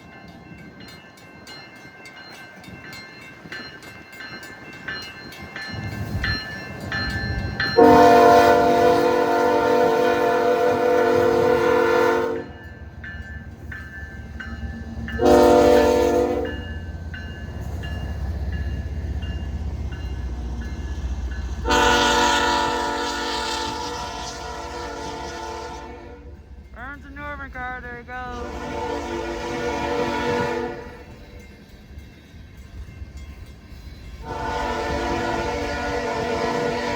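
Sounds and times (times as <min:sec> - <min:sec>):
train rumbling: 0:00.0 - 0:36.9
locomotive air horn: 0:07.8 - 0:12.5, 0:15.2 - 0:16.6, 0:21.6 - 0:26.3, 0:28.3 - 0:31.1, 0:34.2 - 0:36.9.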